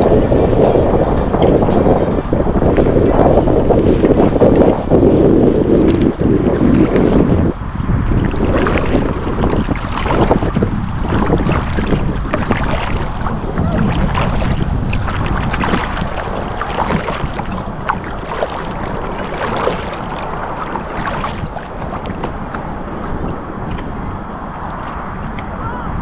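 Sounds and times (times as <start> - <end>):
wind buffeting microphone: 0.0 - 26.0
water splashing around kayak: 2.9 - 25.6.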